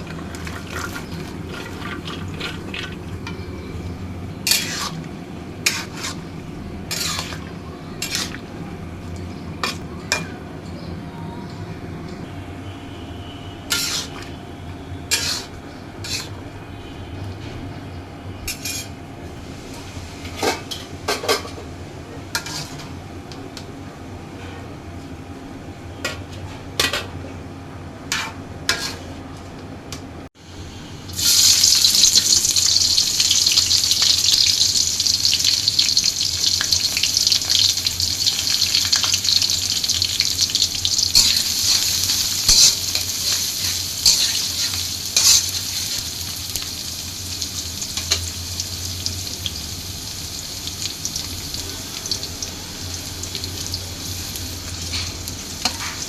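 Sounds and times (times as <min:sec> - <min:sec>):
food sizzling in hot oil: 0:04.4 - 0:05.0, 0:06.9 - 0:07.4, 0:30.4 - 0:56.0.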